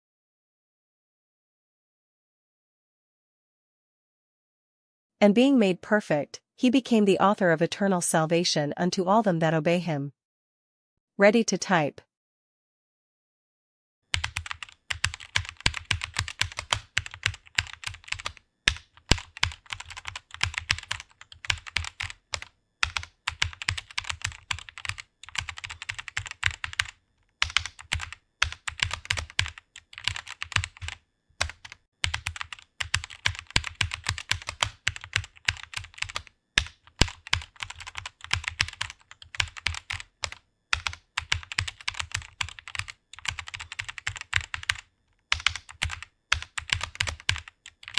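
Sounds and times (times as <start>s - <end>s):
typing on computer keyboard: 14.1s - 47.9s.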